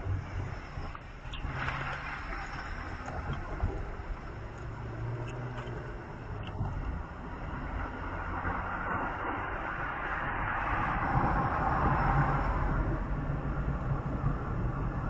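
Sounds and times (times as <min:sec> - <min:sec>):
rushing road noise: 0:00.0 - 0:15.0
vehicle engine and tyre rumble: 0:00.0 - 0:15.0.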